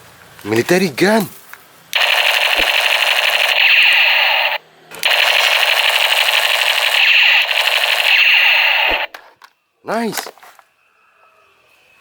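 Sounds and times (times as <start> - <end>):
toy gun electronic firing rattle: 2.0 - 9.3.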